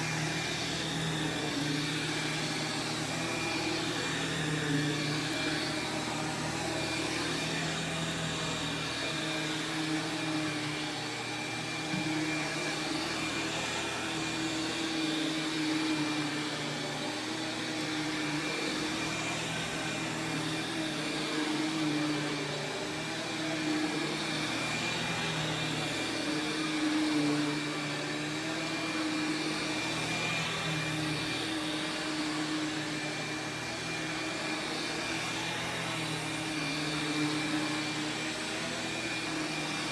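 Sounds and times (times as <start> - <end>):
upright vacuum cleaner running: 0.0 - 39.9.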